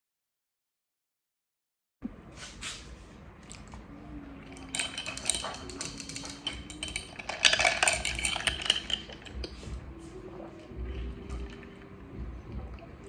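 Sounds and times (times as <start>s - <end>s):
dishes and cutlery clattering: 4.4s - 9.8s.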